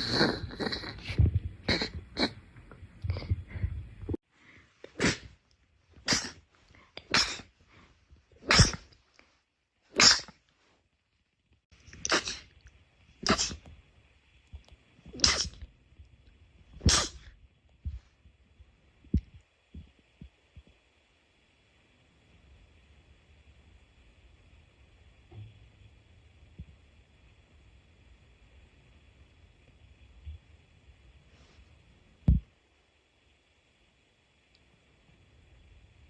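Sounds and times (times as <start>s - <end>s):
faint small sounds: 0.0s - 36.0s
person sneezing: 4.9s - 5.4s, 6.0s - 6.4s, 7.0s - 7.5s, 8.4s - 8.9s, 10.0s - 10.4s, 12.0s - 12.5s, 13.2s - 13.6s, 15.2s - 15.6s, 16.8s - 17.3s.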